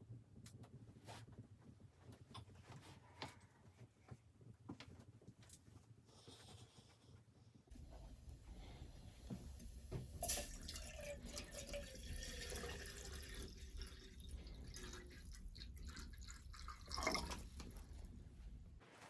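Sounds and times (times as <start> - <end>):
water dripping and splashing: 10.2 - 17.8.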